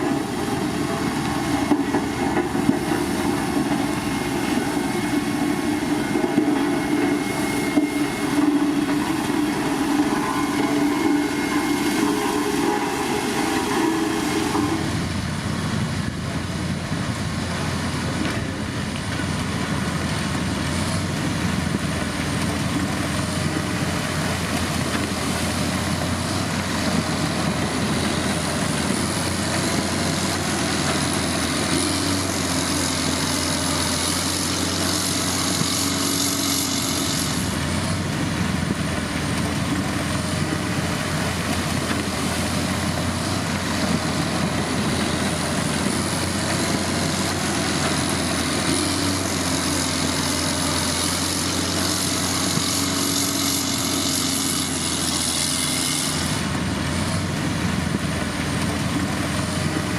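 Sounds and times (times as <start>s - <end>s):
high whine: 0.0s - 16.2s
heavy diesel machinery running: 0.0s - 59.9s.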